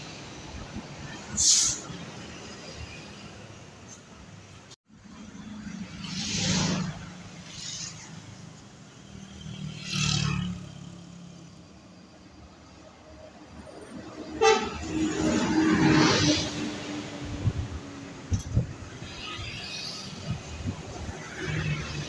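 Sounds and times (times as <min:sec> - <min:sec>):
vehicles passing: 0:00.0 - 0:22.0
loud vehicle horn: 0:14.3 - 0:15.5.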